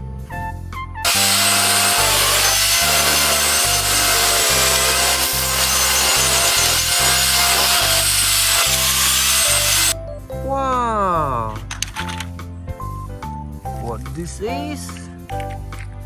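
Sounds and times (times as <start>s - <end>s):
background music with bass line: 0.0s - 1.1s, 9.3s - 16.0s
loud rasping scraping: 1.1s - 10.0s.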